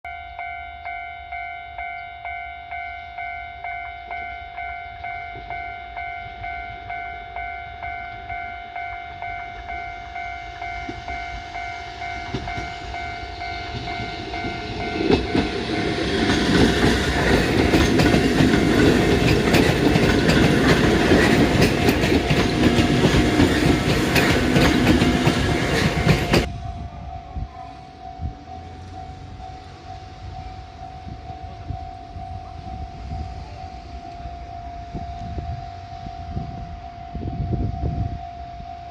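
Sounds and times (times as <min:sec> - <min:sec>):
level-crossing warning bell: 0:00.0 - 0:38.9
electric train passing: 0:00.1 - 0:38.9
train wheel clatter: 0:09.2 - 0:27.2.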